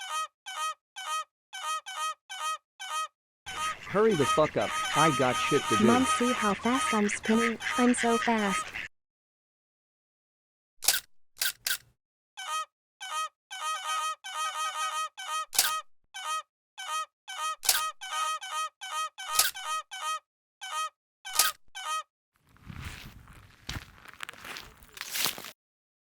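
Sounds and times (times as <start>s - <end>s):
geese honking: 0.0s - 8.9s, 12.4s - 20.9s.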